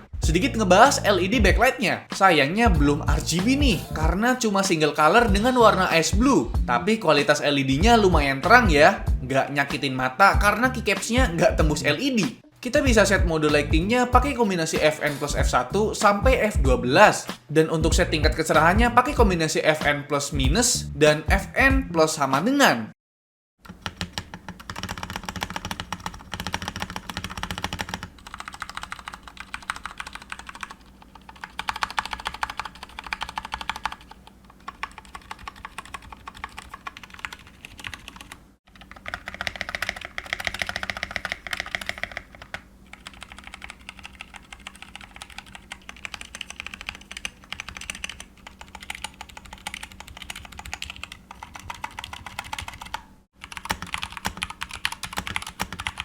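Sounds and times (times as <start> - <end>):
fast typing on mechanical keyboard: 23.6 - 56.0.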